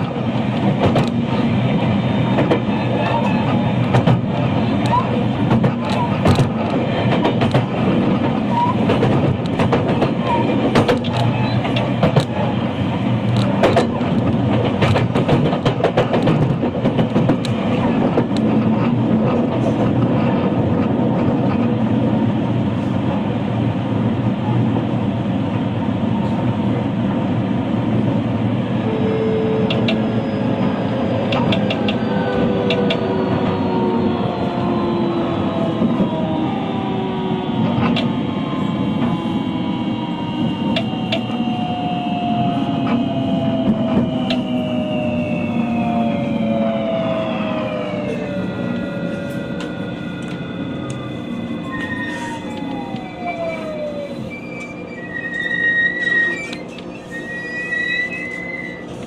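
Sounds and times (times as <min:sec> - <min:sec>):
train wheels rumbling on rail: 0:00.0 - 0:59.0
traction motor whine: 0:28.9 - 0:59.0.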